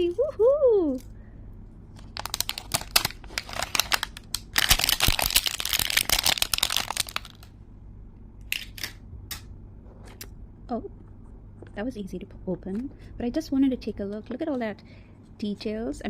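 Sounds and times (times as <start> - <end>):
packaging crinkling and rustling: 2.0 - 7.5.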